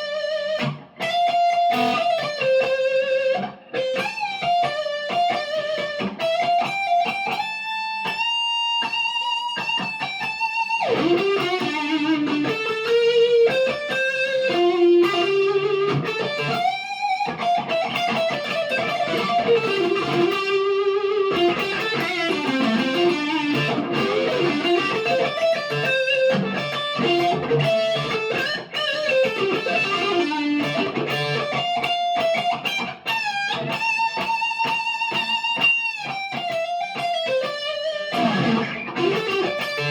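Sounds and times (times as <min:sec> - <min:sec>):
electric guitar lead line: 0:00.0 - 0:39.9.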